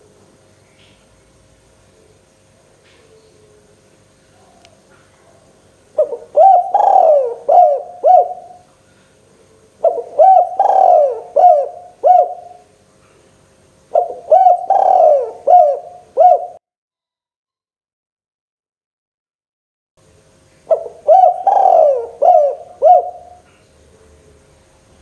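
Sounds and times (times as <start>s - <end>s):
dove cooing: 2.9s - 8.7s, 9.4s - 12.7s, 13.9s - 16.6s, 20.7s - 24.5s.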